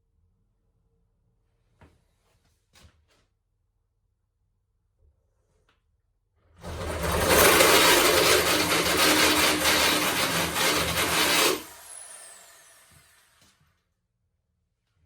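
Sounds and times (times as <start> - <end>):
power drill boring into wood: 6.6 - 13.4.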